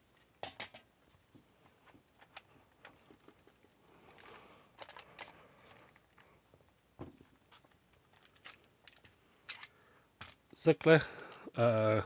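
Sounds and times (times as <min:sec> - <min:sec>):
gun parts clicking and knocking: 0:02.2 - 0:06.3, 0:07.6 - 0:10.6.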